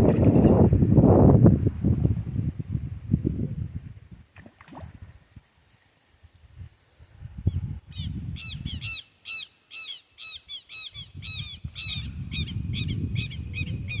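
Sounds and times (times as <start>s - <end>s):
bird squawking: 8.5s - 12.0s.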